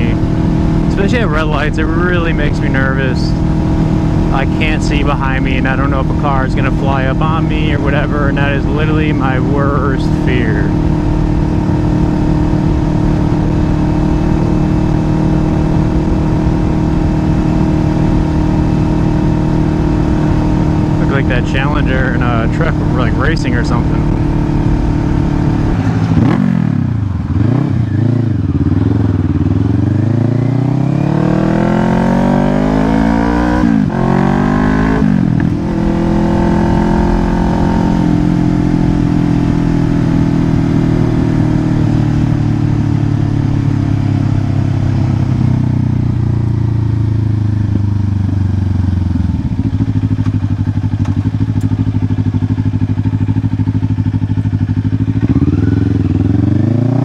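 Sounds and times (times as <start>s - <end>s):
wind rush on microphone: 0.0s - 26.5s, 33.4s - 45.6s
motorcycle engine accelerating: 0.0s - 57.0s.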